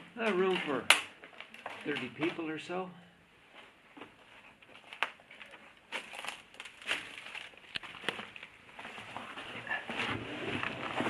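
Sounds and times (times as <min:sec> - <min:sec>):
footsteps crunching on gritty floor: 0:00.2 - 0:02.5, 0:03.5 - 0:09.5.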